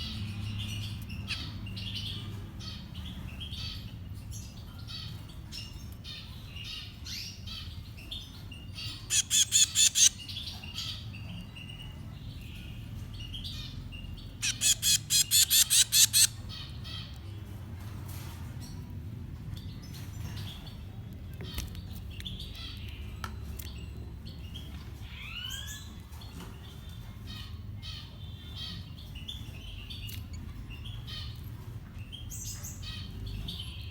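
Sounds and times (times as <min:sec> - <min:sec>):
soft chirping: 0:00.0 - 0:17.2
baby birds harsh begging calls: 0:08.8 - 0:11.2, 0:13.5 - 0:17.2.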